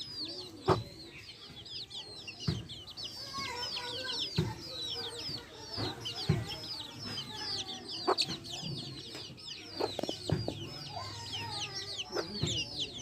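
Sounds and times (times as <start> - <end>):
chicks peeping: 0.0 - 13.0
hens clucking: 3.8 - 11.2.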